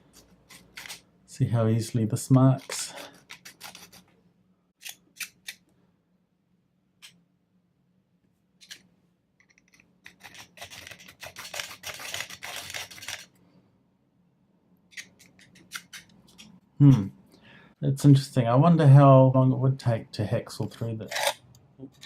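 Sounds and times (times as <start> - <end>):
file scraping metal padlock: 2.6 - 4.1, 14.9 - 16.6.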